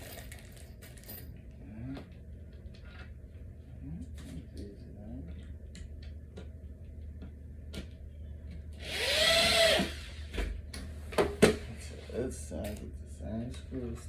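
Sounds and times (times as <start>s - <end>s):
power drill driving screw: 8.8s - 10.3s.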